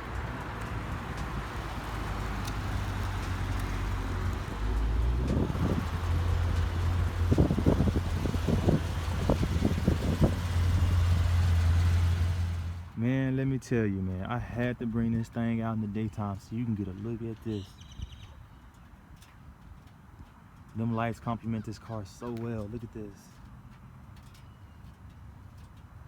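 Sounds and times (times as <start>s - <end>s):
short bumps: 0.0s - 13.0s
car engine rumbling: 0.0s - 13.4s.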